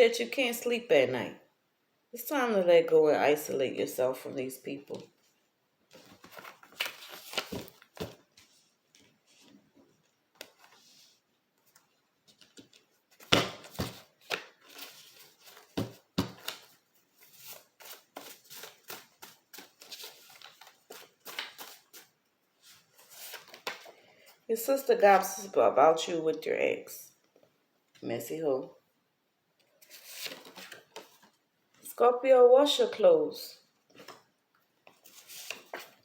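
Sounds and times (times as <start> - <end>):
cards being shuffled: 5.9 - 9.6, 11.8 - 22.1.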